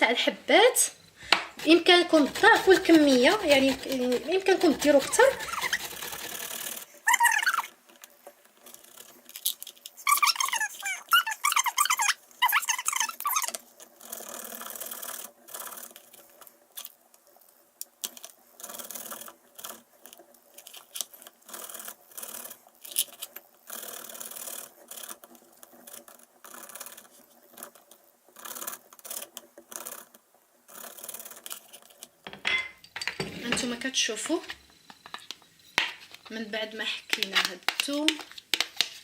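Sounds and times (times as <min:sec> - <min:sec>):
garlic rasping on hand grater: 0:01.5 - 0:07.7.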